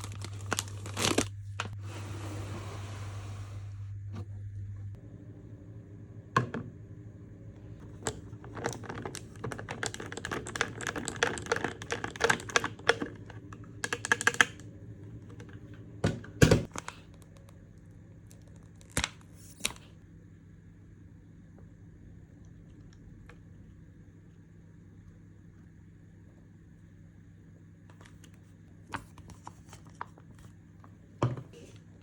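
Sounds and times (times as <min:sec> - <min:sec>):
faint steady hum: 0:00.0 - 0:32.0.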